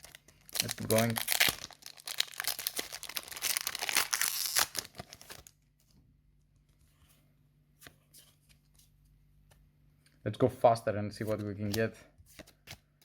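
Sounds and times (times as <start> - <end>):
foil pack tearing and crinkling: 0.0 - 5.5.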